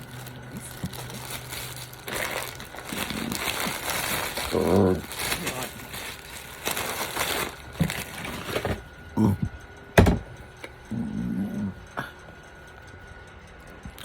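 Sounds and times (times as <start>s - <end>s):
chip bag crinkling: 0.0s - 8.8s
person humming: 4.4s - 5.7s, 9.2s - 9.6s, 10.9s - 12.2s.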